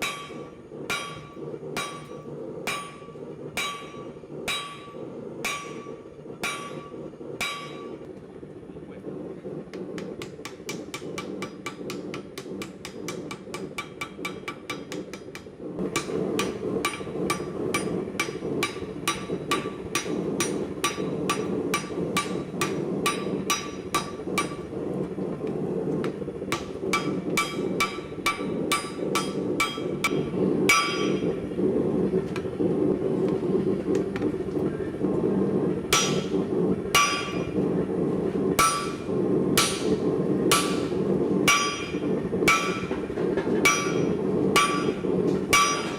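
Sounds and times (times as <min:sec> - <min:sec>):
hammer striking steel on anvil: 0:00.0 - 0:08.0, 0:09.7 - 0:24.7, 0:26.0 - 0:31.4, 0:35.9 - 0:37.6, 0:38.6 - 0:39.0, 0:39.6 - 0:45.9
low rushing noise: 0:15.6 - 0:45.9.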